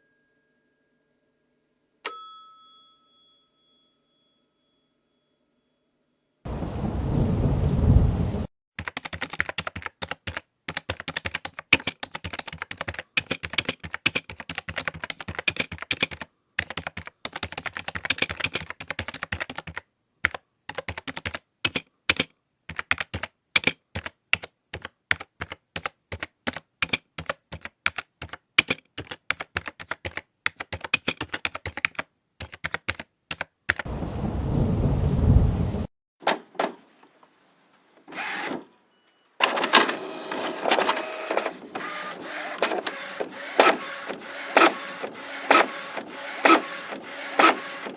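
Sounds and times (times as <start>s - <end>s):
low rumbling burst: 6.5s - 8.5s, 33.9s - 35.9s.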